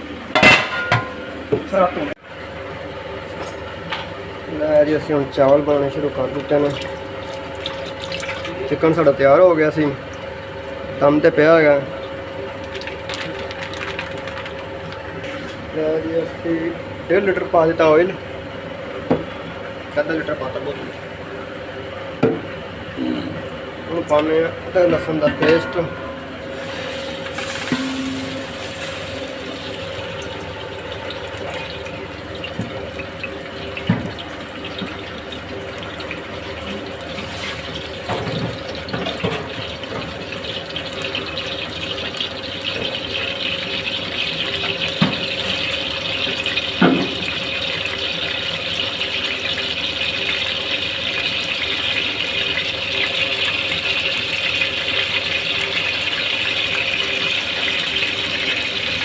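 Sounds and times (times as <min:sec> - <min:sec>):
paste sizzling in hot oil: 0:26.5 - 0:31.8.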